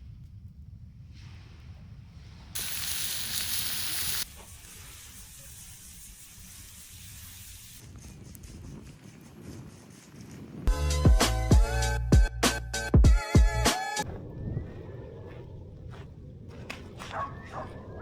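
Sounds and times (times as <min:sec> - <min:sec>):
faint fire crackles: 0:00.0 - 0:10.7
food sizzling loud hiss: 0:02.6 - 0:07.8
low rumble: 0:14.0 - 0:17.2.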